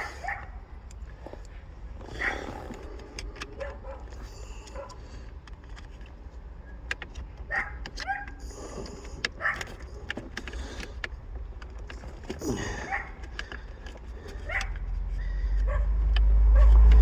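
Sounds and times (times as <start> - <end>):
low rumble: 16.1 - 17.0.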